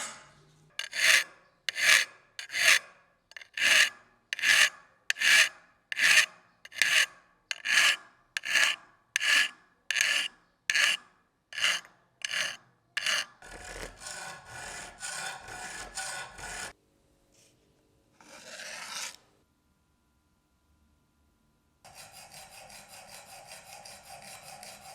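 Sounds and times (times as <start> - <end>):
abrasive scrubbing knife blade: 0.8 - 11.0, 11.6 - 13.3, 21.9 - 24.9.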